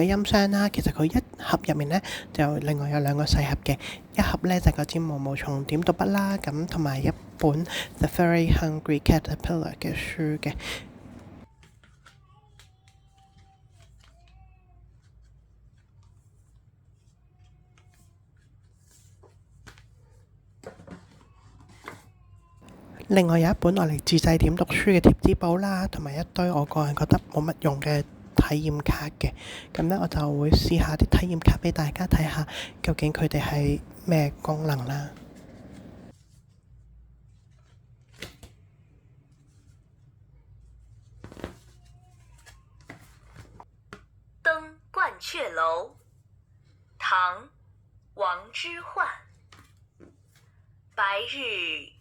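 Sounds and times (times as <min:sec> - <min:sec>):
low steady hum: 0:00.0 - 0:11.5, 0:22.6 - 0:36.1
handling noise: 0:22.6 - 0:36.1.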